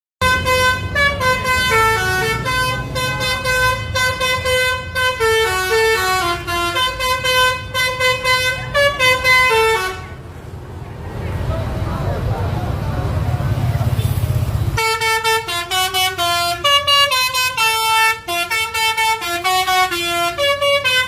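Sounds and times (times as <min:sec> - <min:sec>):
musical bus horn melody: 0:00.2 - 0:10.2, 0:14.8 - 0:21.0
bus engine rumble: 0:00.2 - 0:21.0.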